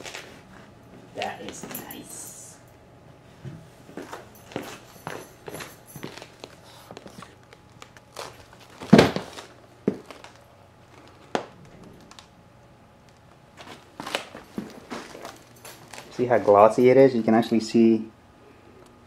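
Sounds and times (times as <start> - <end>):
packaging crinkling: 6.1 - 12.3, 13.1 - 16.7.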